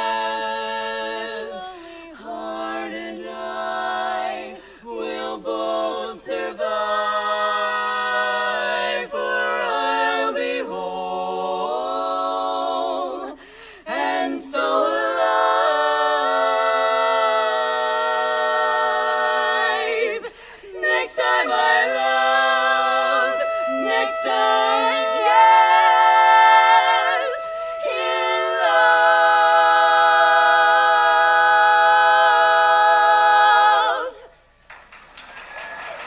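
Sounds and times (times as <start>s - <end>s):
women singing a cappella harmony: 0.0s - 34.6s.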